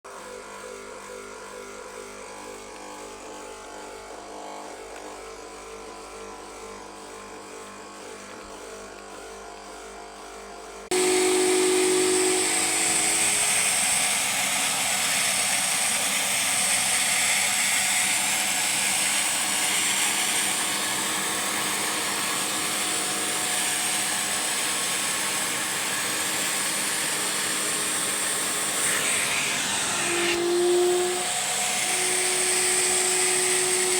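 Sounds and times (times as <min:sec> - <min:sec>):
vacuum cleaner humming: 0:01.8 - 0:33.9
vacuum cleaner suction: 0:10.9 - 0:33.9.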